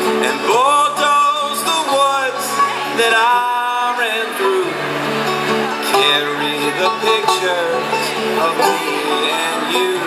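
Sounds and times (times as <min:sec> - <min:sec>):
low guitar chords: 0:00.0 - 0:10.0.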